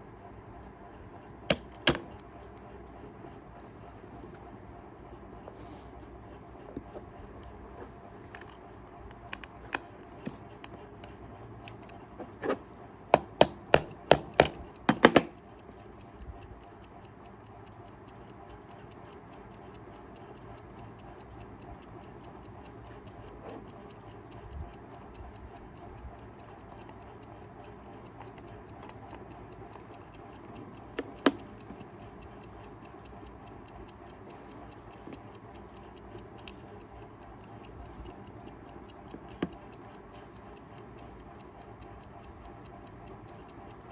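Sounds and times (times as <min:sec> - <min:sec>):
loud sharp clicks: 0:01.5 - 0:02.5
clock rapid faint ticking: 0:14.8 - 0:43.9.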